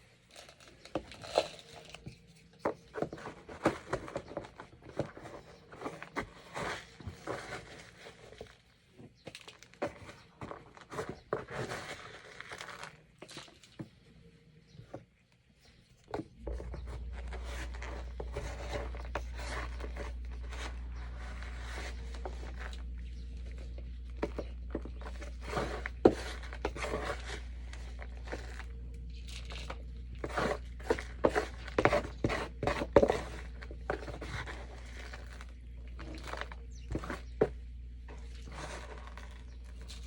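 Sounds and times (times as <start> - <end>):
scoop scraping cat litter: 0.3 - 8.7, 9.3 - 13.6, 16.2 - 40.0
steady low hum: 13.9 - 40.0.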